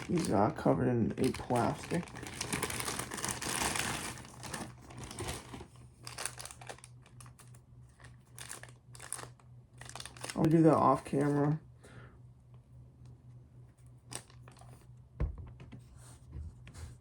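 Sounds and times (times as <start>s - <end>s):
plastic wrapping crinkling: 0.0s - 11.6s, 14.1s - 14.8s.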